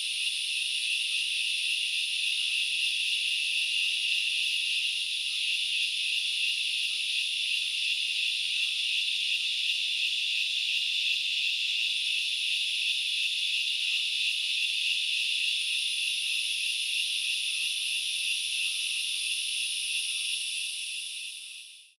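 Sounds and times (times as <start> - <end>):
insect chorus buzzing: 0.0 - 21.9.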